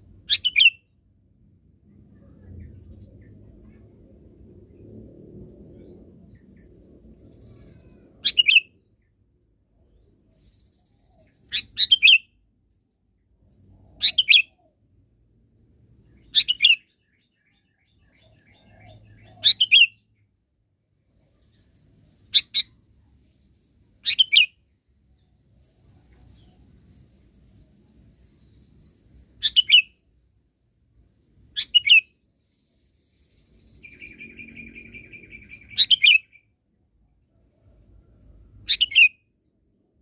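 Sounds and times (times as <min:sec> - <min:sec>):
bird singing bubbly phrases: 0:07.2 - 0:08.7, 0:33.6 - 0:36.4.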